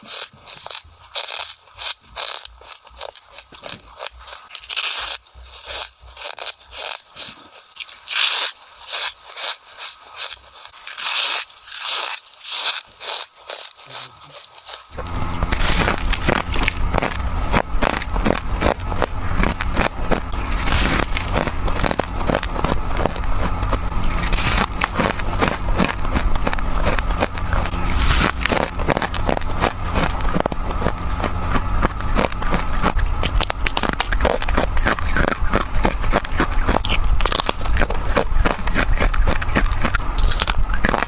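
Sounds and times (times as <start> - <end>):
person chewing crunchy frost: 0.0 - 41.0
low rumble: 14.9 - 41.0.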